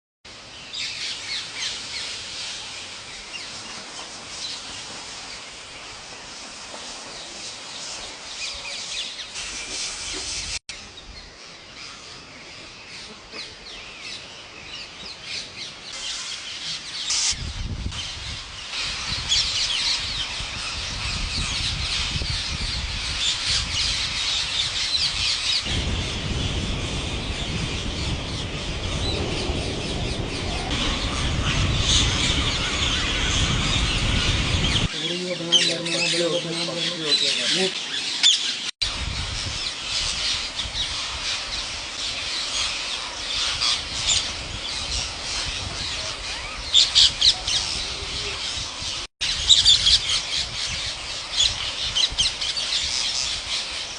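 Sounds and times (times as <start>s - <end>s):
birds chirping and calling: 7.4s - 53.9s
low rumble: 25.7s - 34.9s.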